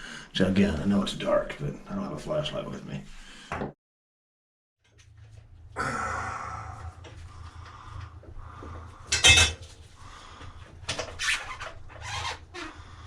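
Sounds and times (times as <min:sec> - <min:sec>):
metal tools clinking and scraping: 0:09.1 - 0:09.7.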